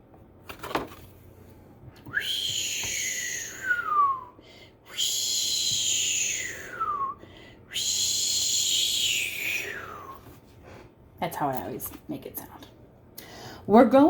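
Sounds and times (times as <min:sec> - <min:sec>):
woman imitating howling wind: 0:04.9 - 0:07.1.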